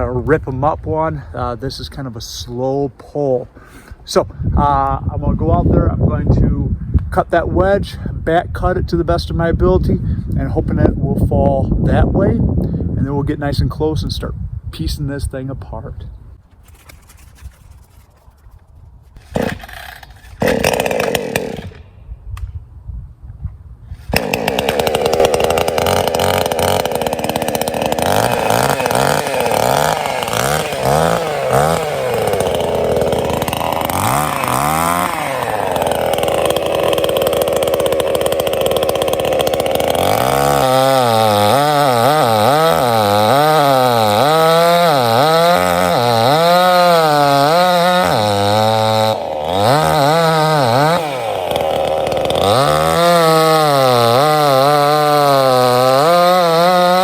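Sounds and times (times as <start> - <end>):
chainsaw cutting into tree: 19.1 - 22.0, 24.0 - 57.0.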